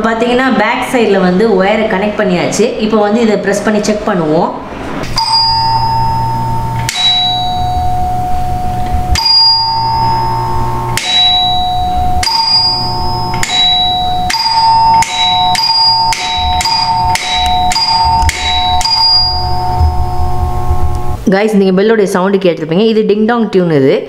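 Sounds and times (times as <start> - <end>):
ding-dong doorbell chiming: 5.2 - 20.6.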